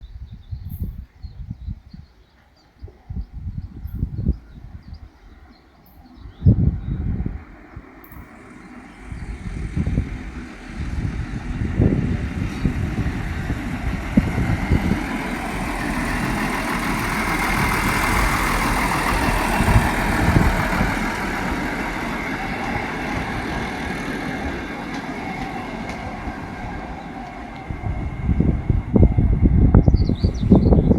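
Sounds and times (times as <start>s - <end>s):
train passing: 6.5s - 30.9s
wheels knocking on rail joints: 9.4s - 29.2s.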